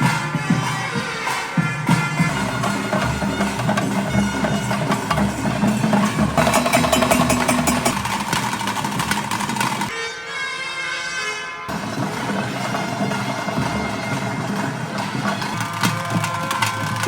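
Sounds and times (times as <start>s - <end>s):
shrill reed pipe: 1.9s - 10.2s
fast dense drumming: 2.2s - 9.9s.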